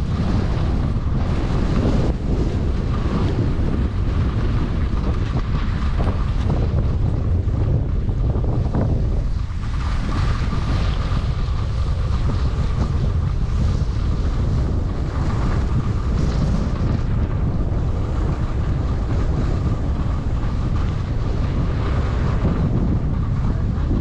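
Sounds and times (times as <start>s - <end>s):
wind buffeting microphone: 0.0s - 24.0s
skis hissing over snow: 8.6s - 23.8s.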